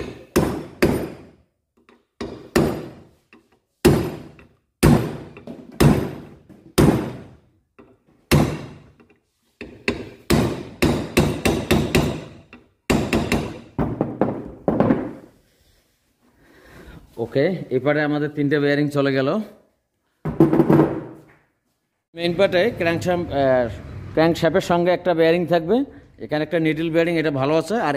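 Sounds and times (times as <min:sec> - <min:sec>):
hammer striking metal: 0:00.0 - 0:03.1, 0:03.8 - 0:07.3, 0:08.3 - 0:13.8.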